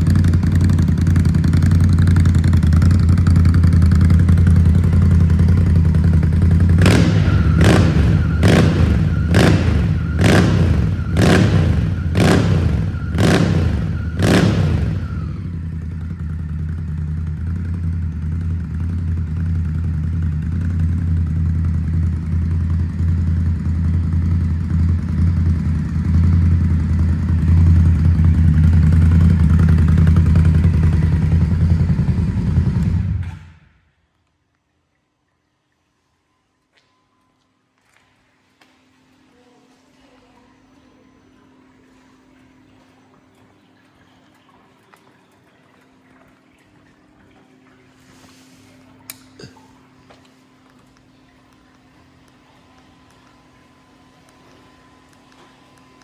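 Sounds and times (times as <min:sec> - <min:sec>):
motorcycle engine idling: 0:00.0 - 0:33.6
motorcycle engine throttle blips: 0:00.0 - 0:34.0.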